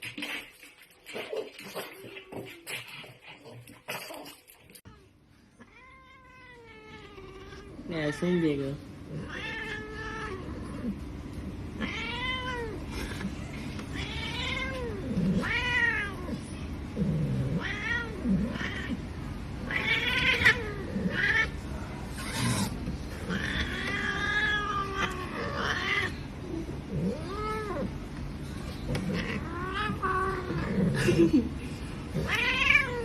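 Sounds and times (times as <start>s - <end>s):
cat meowing: 11.8s - 12.8s, 13.9s - 16.3s, 17.5s - 19.0s, 19.7s - 21.6s, 23.3s - 26.2s, 32.2s - 33.0s.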